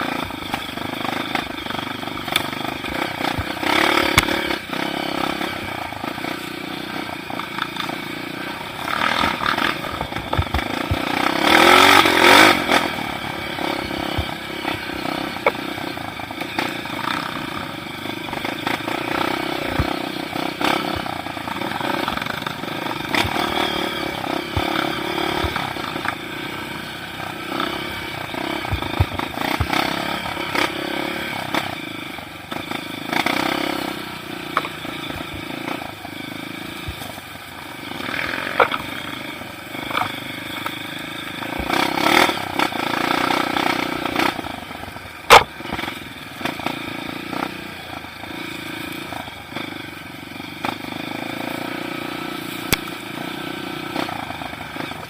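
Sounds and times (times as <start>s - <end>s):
motorcycle engine revving: 0.0s - 55.0s.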